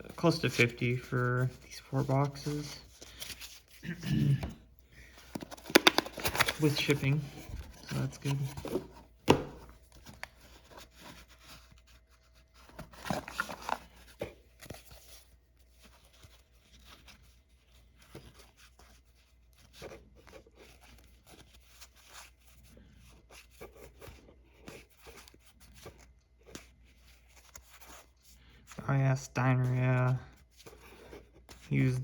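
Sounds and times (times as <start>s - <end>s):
cards rustling and clicking: 0.0s - 28.8s, 29.5s - 32.0s
pack wrapper crinkling and tearing: 5.4s - 8.3s.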